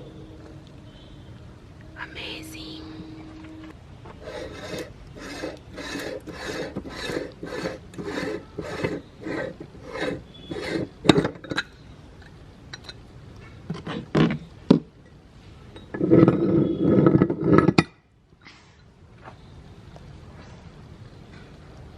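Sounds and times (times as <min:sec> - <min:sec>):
meat grinder grinding candy: 0:04.3 - 0:10.9.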